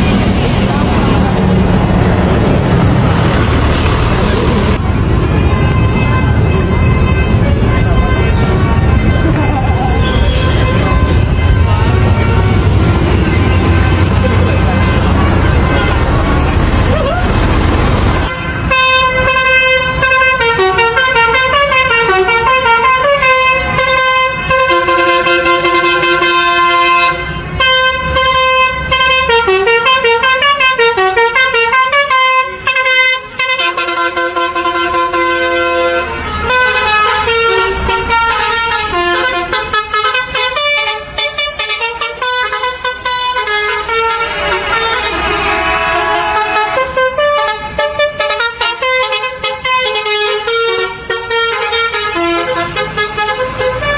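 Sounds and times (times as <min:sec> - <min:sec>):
rush of noise: 0:00.0 - 0:05.6
multi-tone musical bus horn: 0:04.7 - 0:53.9.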